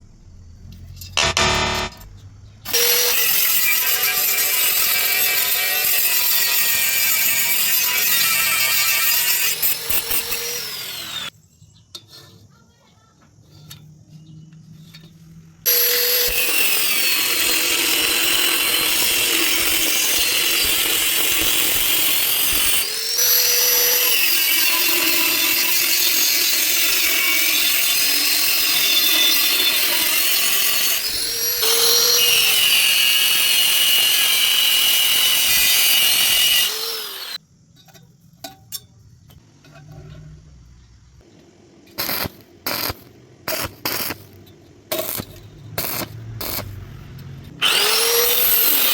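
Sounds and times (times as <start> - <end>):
power tool grinding metal: 1.2 - 2.0, 2.7 - 11.3, 15.7 - 37.4, 47.5 - 48.9.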